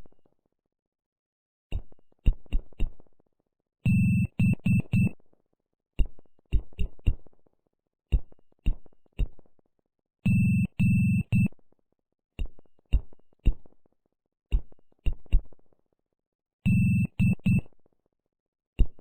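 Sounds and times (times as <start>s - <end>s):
morse code beeps: 3.9s - 5.1s, 16.7s - 17.6s.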